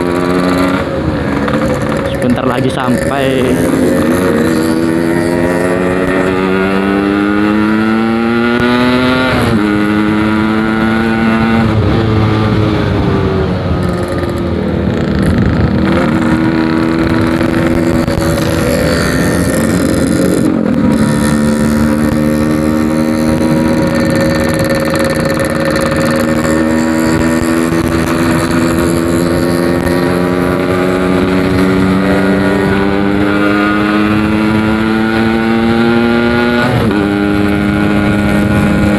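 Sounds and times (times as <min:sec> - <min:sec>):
motorcycle engine accelerating: 0:00.0 - 0:38.9.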